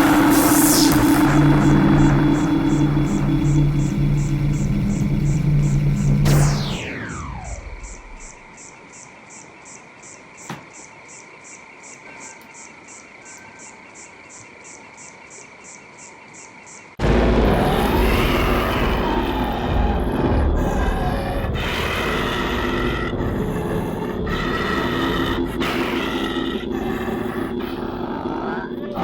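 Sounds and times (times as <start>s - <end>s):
high sweep falling in pitch: 0.0s - 8.4s, 17.0s - 27.9s
loud dense rush of noise: 0.0s - 8.4s, 17.0s - 28.3s
high chirping pulses: 0.0s - 8.5s.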